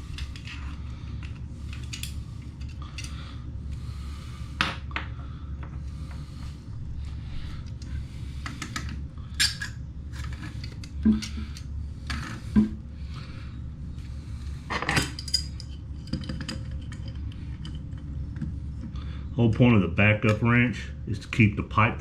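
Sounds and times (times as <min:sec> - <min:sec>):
metal tools clinking and scraping: 0:08.6 - 0:12.4, 0:14.7 - 0:18.1.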